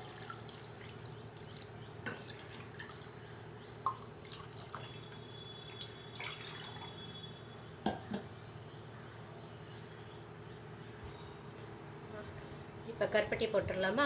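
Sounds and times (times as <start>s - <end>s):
water dripping: 0.0s - 7.1s
steady low hum: 0.0s - 14.0s.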